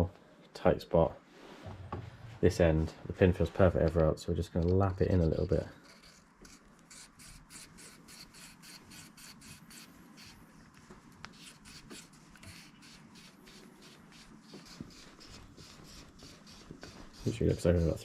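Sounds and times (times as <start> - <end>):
hand lapping rasping strokes: 5.2 - 18.0.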